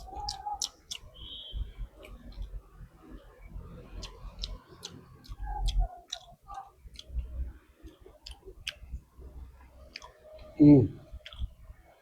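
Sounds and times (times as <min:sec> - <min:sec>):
wet mouth clicks and smacks: 0:00.0 - 0:01.1, 0:03.9 - 0:07.2, 0:07.8 - 0:08.9, 0:09.9 - 0:10.2, 0:11.2 - 0:11.6
person chewing food: 0:00.0 - 0:01.4, 0:02.0 - 0:02.6, 0:03.8 - 0:11.7.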